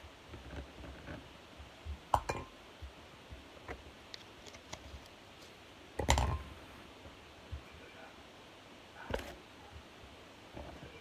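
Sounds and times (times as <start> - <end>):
containers and utensils clinking: 2.1 - 2.5, 6.0 - 6.5.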